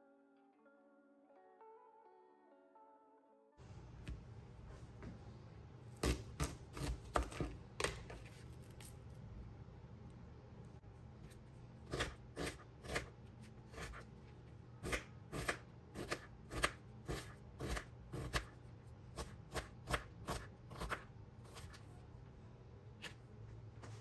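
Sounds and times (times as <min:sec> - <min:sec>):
low steady hum: 0:03.6 - 0:24.0
knife chopping on cutting board: 0:06.0 - 0:08.2, 0:14.8 - 0:18.5, 0:19.2 - 0:21.7.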